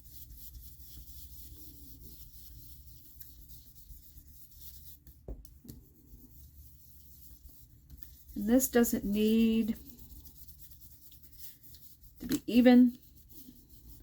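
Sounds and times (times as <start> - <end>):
ink applicator rubbing on cardstock: 5.9 - 14.0.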